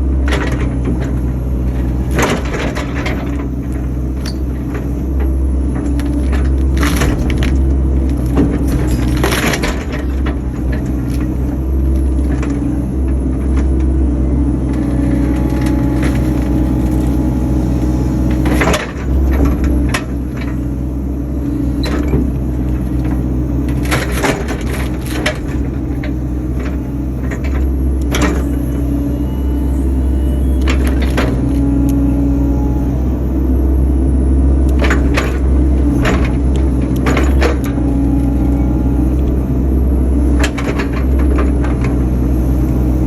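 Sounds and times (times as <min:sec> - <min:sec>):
excavator engine running: 0:00.0 - 0:43.0
wood cracking and knocking: 0:00.4 - 0:13.8, 0:14.7 - 0:20.6.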